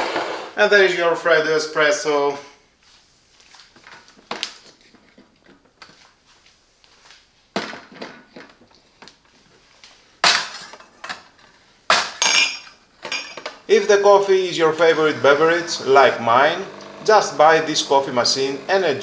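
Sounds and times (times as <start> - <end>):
glassware and dishes clinking: 10.2 - 11.2, 12.0 - 13.6
light rattling of dishes: 12.0 - 13.6.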